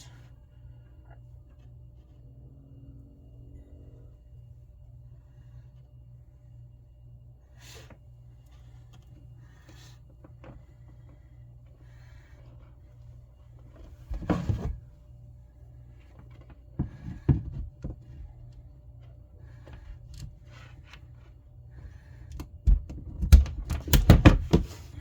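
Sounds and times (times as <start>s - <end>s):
low steady hum: 0.0s - 25.0s.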